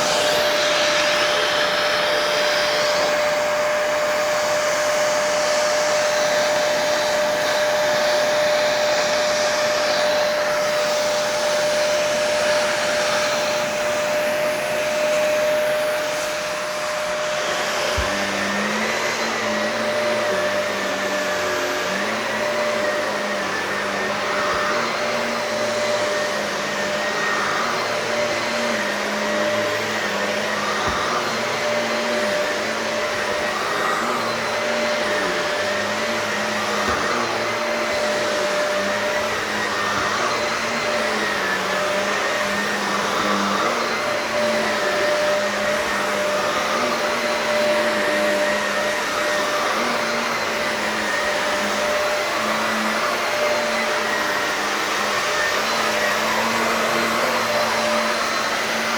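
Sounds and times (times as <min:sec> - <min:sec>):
vacuum cleaner running on carpet: 0:00.0 - 0:58.9.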